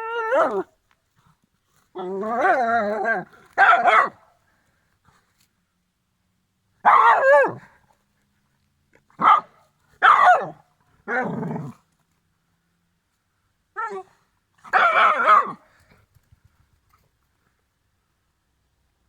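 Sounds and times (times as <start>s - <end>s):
small dog barking: 3.5s - 4.3s, 6.8s - 7.6s, 9.2s - 10.6s, 14.6s - 15.6s.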